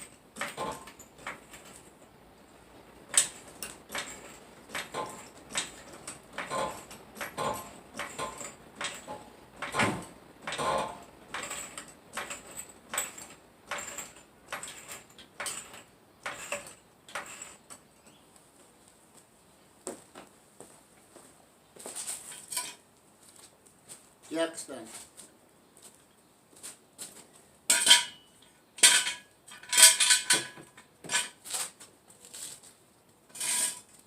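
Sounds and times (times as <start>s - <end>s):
car jack metal clicks and clanks: 0.0s - 2.0s, 3.1s - 17.8s, 27.7s - 31.4s
heavy metal clunks: 3.2s - 17.4s.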